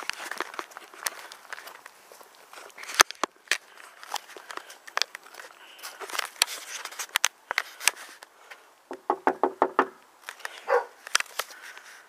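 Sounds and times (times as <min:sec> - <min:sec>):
sharp taps and clicks: 0:08.9 - 0:10.0
dog barking: 0:10.6 - 0:11.0.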